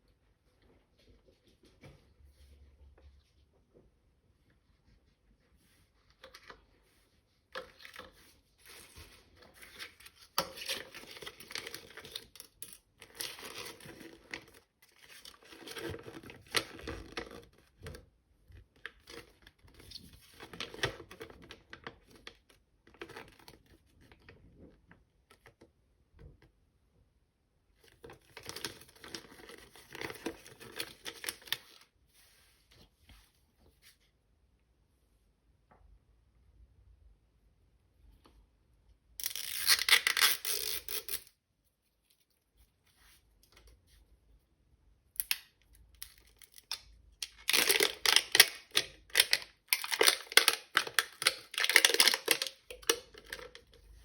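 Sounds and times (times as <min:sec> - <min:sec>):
plastic packaging crinkling and tearing: 0:08.6 - 0:17.6, 0:39.2 - 0:41.4, 0:46.0 - 0:53.7.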